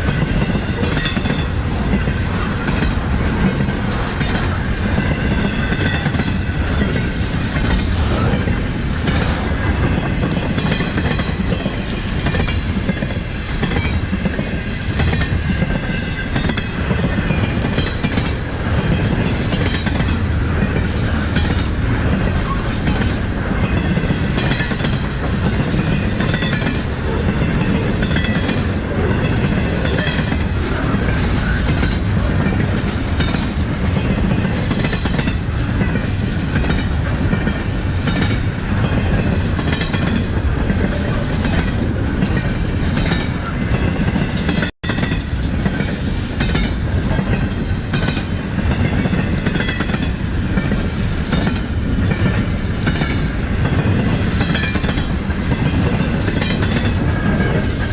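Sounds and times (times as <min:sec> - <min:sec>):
clatter over rail joints: 0:00.0 - 0:57.9
train wheels rumbling on rail: 0:00.0 - 0:57.9
wheels squealing: 0:15.2 - 0:45.9.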